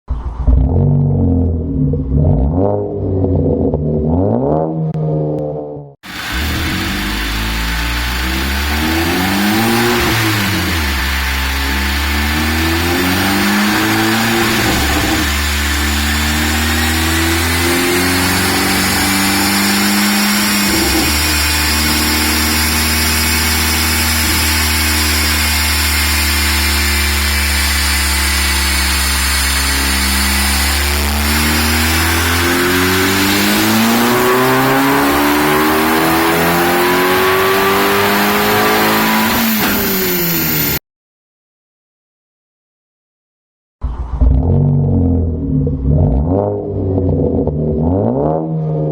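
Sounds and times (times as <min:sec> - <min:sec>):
car engine revving: 0:00.1 - 0:40.8, 0:43.8 - 0:48.9
dyno roller and fan rush: 0:06.1 - 0:40.8.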